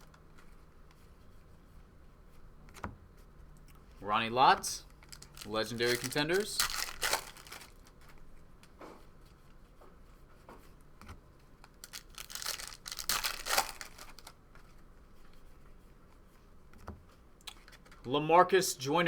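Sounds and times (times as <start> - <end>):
wrappers crinkling and tearing: 4.8 - 8.2, 11.6 - 14.4.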